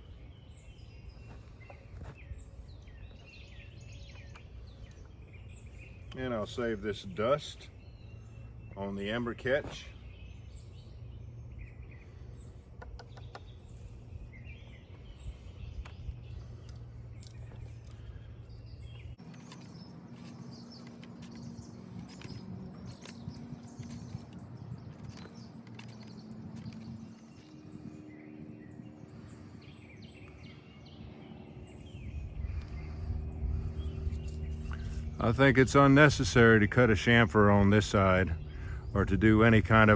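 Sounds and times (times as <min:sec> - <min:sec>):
birds chirping: 0:00.0 - 0:39.9
low hum with steady tones: 0:00.0 - 0:39.9
steady low rumble: 0:13.5 - 0:19.2, 0:31.2 - 0:39.9.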